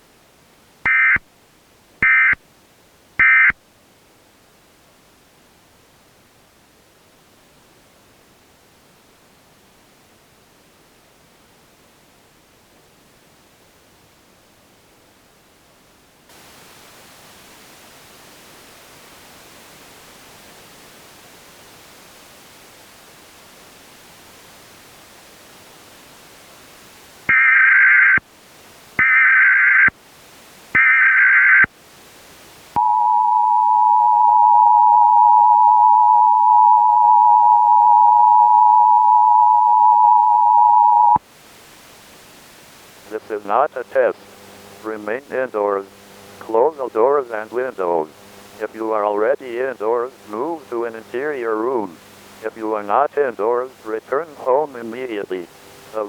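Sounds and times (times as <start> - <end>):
faint static hiss: 0.0 - 56.0
harsh data bursts: 0.9 - 1.2, 2.0 - 2.4
two-tone attention signal: 0.9 - 1.2, 32.8 - 41.2.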